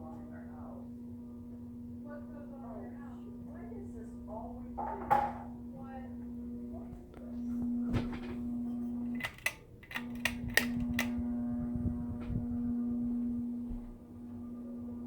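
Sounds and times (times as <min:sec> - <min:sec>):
ceiling fan motor buzzing: 0:00.0 - 0:15.0
sharp clicks: 0:09.2 - 0:11.2.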